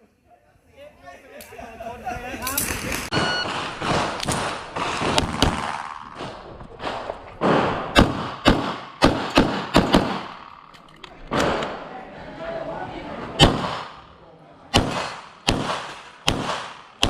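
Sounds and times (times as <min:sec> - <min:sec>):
handgun shots: 0:14.8 - 0:17.0.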